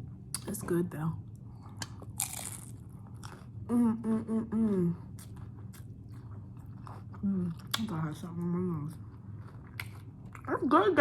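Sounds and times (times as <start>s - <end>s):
crunching and chewing taco: 1.4s - 3.7s, 5.0s - 10.8s.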